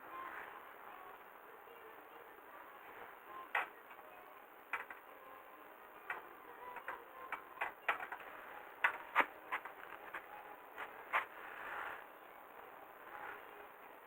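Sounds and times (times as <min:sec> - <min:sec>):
sharp clicks and light knocks: 0:04.7 - 0:05.1, 0:06.0 - 0:11.3.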